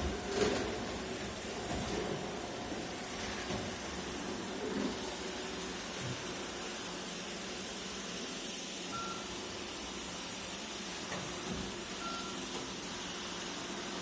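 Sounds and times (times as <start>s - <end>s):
short high beeps: 8.9s - 9.3s, 12.0s - 12.4s.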